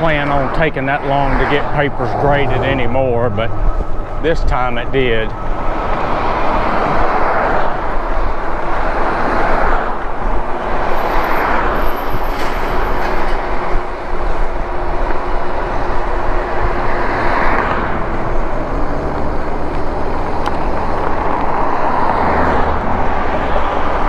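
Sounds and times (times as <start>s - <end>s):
road noise: 0.0s - 24.0s
wind rushing: 5.0s - 24.0s.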